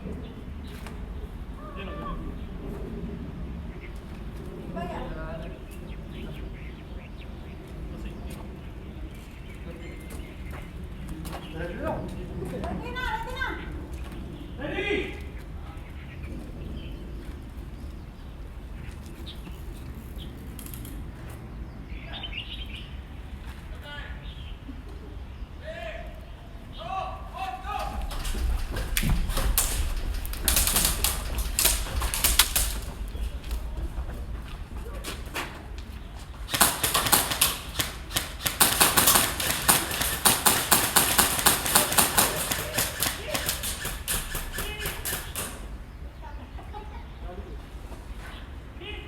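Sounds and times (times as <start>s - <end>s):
steady low rumble: 26.1s - 42.3s
airsoft guns firing: 27.7s - 33.6s, 36.4s - 45.7s
sharp clicks: 27.8s - 33.7s, 36.5s - 45.7s.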